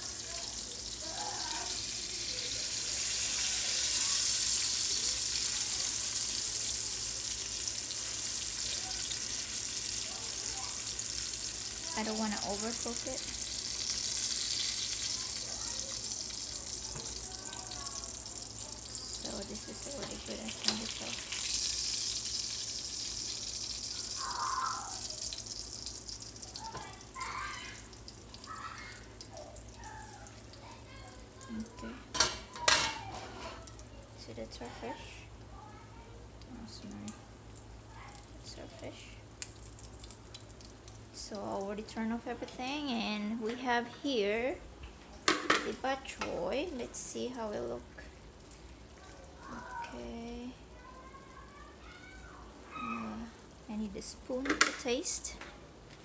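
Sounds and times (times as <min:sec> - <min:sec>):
fish sizzling in hot oil: 0:00.0 - 0:30.6, 0:37.5 - 0:41.6.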